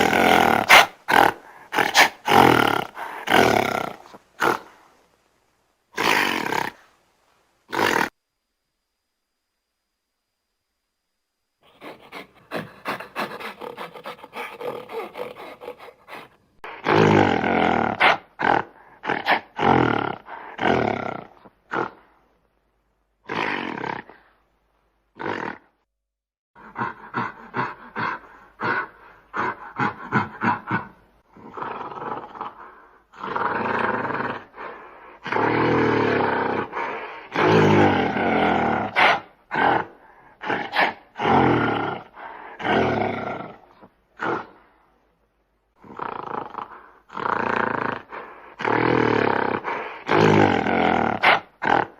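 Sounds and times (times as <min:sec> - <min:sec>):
gorilla roaring and grunting: 0:00.0 - 0:04.8, 0:06.0 - 0:06.8, 0:07.7 - 0:08.1, 0:11.7 - 0:22.0, 0:26.6 - 0:44.6, 0:45.8 - 0:51.9.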